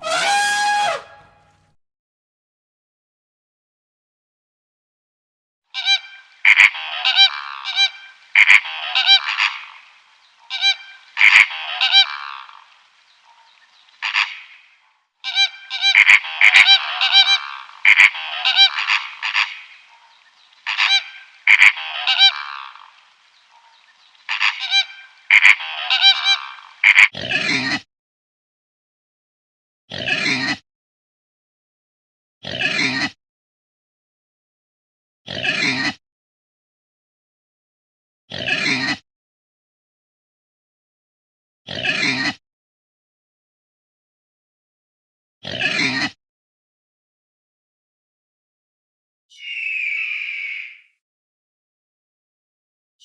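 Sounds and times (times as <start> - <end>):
animal sharp calls: 0.0 - 1.3, 49.3 - 51.0.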